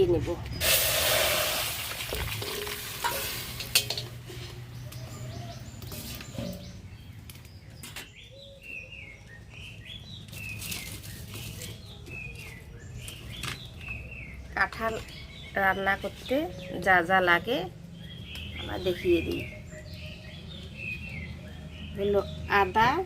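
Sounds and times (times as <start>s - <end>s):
birds chirping: 0.0s - 23.0s
metal pots and utensils clinking: 0.6s - 4.6s, 5.8s - 6.8s.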